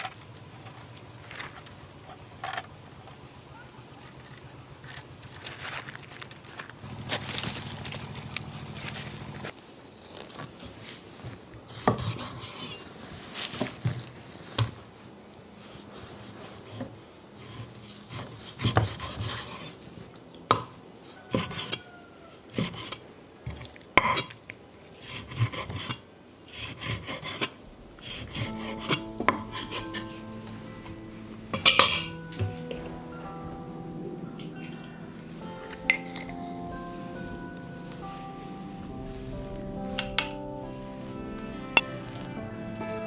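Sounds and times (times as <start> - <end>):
hands rubbing and scraping: 26.6 - 33.4
background music: 27.7 - 43.0.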